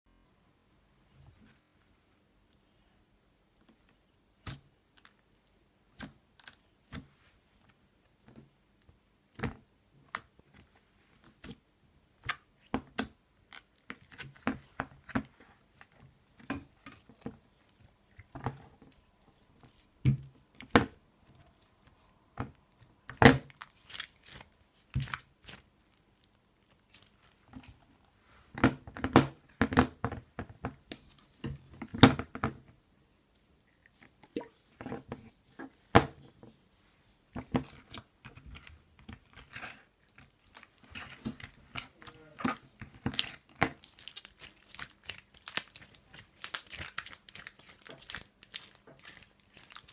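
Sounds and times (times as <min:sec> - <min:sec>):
crunchy slime crackling: 0:16.8 - 0:27.9, 0:37.5 - 0:49.9.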